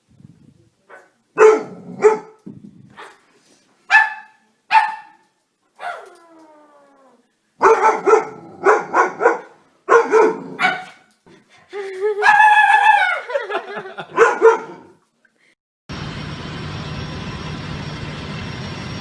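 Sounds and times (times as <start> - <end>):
dog barking: 0.9 - 2.4, 3.9 - 5.2, 5.8 - 6.1, 7.6 - 11.1, 14.0 - 15.0
dog drawn-out cry: 7.0 - 11.1, 14.0 - 14.9.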